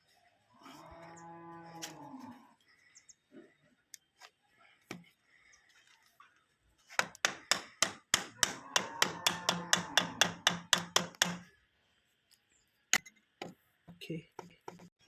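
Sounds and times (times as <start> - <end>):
hammer striking: 7.0 - 11.4.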